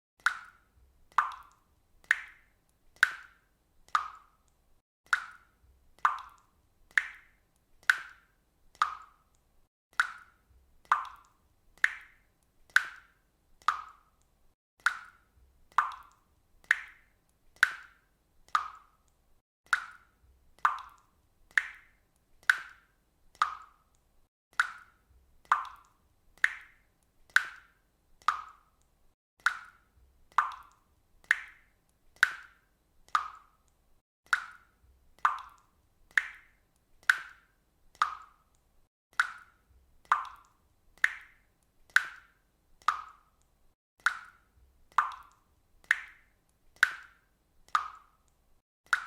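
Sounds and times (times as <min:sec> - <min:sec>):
water dripping into water: 0:00.2 - 0:49.0.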